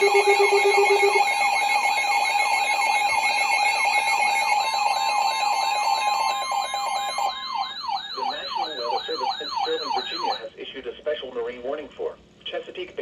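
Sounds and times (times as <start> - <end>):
steady alert tones: 0.0 - 10.4
wailing siren tone: 0.0 - 10.4.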